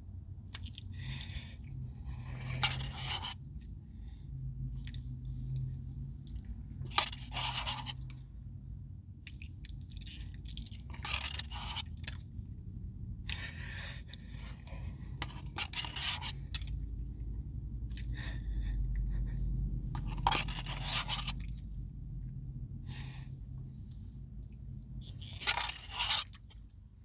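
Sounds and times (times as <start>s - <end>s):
spoon scraping ice cream cup: 2.1s - 3.4s, 6.9s - 8.1s, 10.9s - 11.9s, 15.2s - 16.7s, 20.0s - 21.5s, 25.0s - 26.5s.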